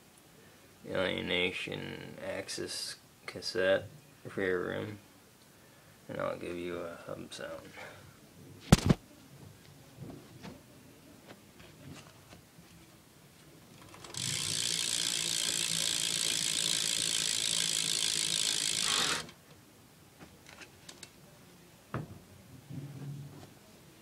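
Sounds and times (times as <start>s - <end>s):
bike hub ratcheting clicks: 13.8s - 19.4s.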